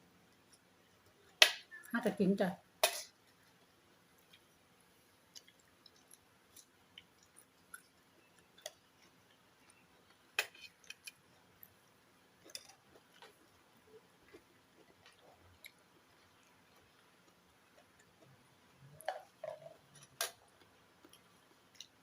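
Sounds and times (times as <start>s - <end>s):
chewing and utensil clicks: 5.3s - 11.2s.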